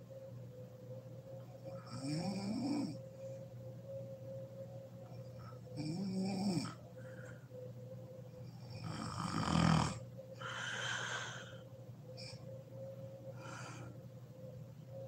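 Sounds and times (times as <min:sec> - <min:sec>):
woman snoring: 0:01.8 - 0:03.0, 0:05.8 - 0:06.8, 0:08.8 - 0:11.5
breathy rush of air: 0:10.4 - 0:11.7.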